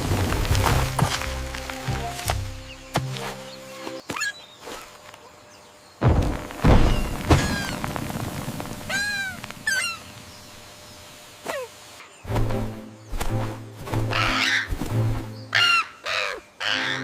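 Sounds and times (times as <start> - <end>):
heavy cartoon thud: 6.0 - 7.6
high cartoon squeals: 8.9 - 10.0.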